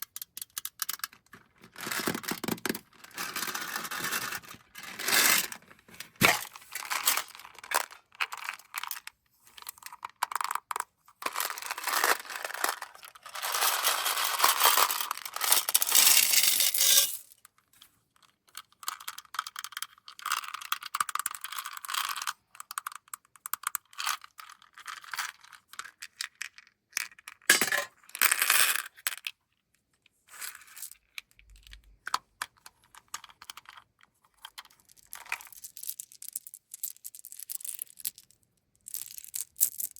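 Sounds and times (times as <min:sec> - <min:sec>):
candies clattering onto hard surface: 0:11.2 - 0:17.3.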